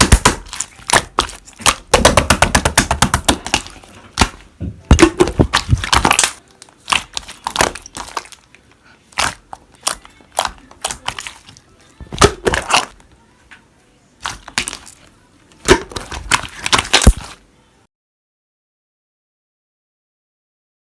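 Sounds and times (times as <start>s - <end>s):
slime crackling and popping: 0.0s - 8.5s, 9.1s - 13.0s, 14.2s - 15.0s, 15.6s - 17.4s.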